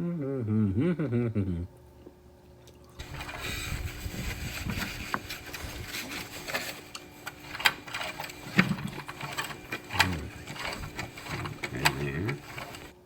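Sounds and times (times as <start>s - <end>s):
sewing machine clattering: 6.4s - 13.0s.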